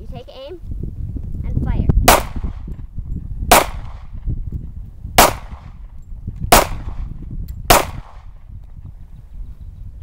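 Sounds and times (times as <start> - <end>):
pistol shots with echo: 2.1 - 2.6, 3.5 - 4.2, 5.2 - 5.8, 6.5 - 7.1, 7.7 - 8.3.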